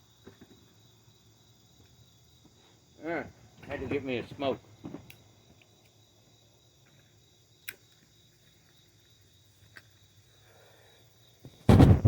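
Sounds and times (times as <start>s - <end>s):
crickets chirring: 0.0s - 12.0s
sudden loud noise: 11.7s - 12.0s.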